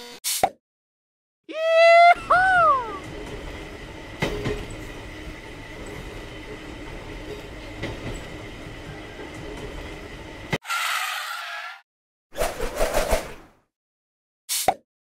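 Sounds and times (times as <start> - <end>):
train rumbling on rails: 2.1 - 10.6
wheels clacking over rail joints: 3.1 - 10.6.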